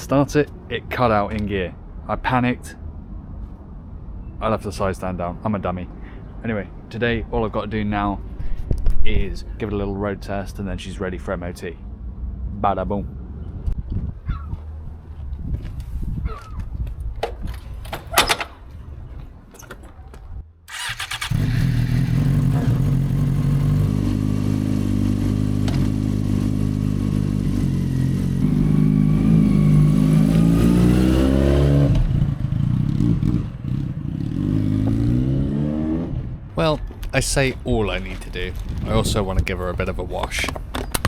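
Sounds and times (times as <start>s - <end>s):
motorcycle engine revving: 20.7s - 36.3s.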